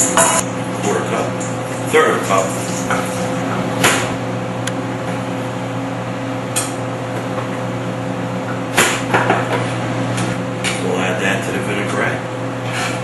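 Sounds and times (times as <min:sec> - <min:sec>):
utensils clinking against dishes: 0:00.0 - 0:00.4
kitchen machinery humming: 0:00.0 - 0:13.0.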